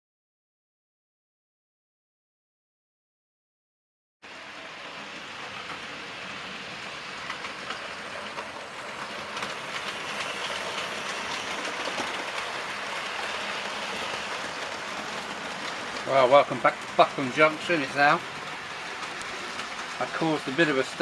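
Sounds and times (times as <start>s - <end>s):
model train running on track: 4.2s - 21.0s.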